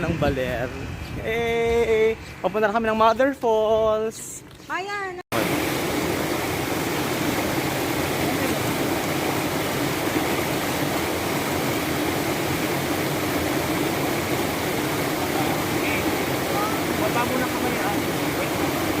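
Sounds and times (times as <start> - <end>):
waterfall rushing: 5.3 - 19.0.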